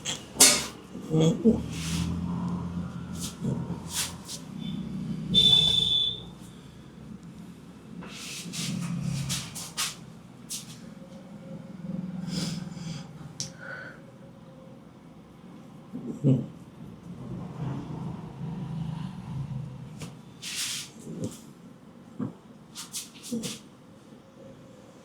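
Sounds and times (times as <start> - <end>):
hands rubbing: 3.2 - 4.5, 22.8 - 23.6.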